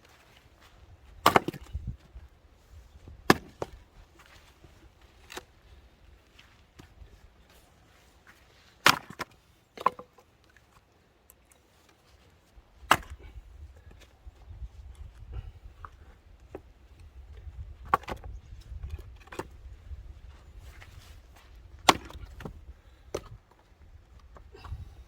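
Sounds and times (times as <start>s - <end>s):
axe chopping firewood: 1.2s - 1.8s, 3.2s - 3.8s, 8.8s - 10.1s, 12.8s - 13.3s, 17.8s - 18.3s, 21.8s - 23.4s.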